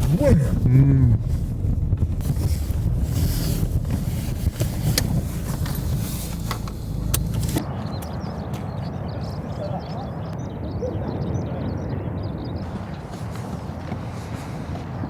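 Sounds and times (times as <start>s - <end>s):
car rumbling on the move: 0.0s - 8.6s
wind noise: 0.0s - 15.0s.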